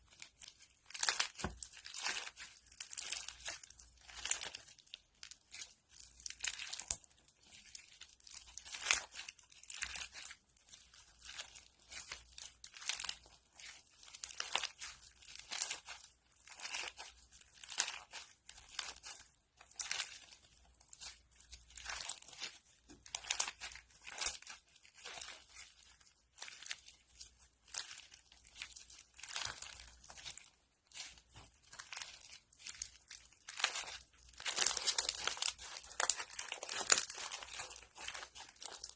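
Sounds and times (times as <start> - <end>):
crunchy slime crackling: 0.0 - 38.9.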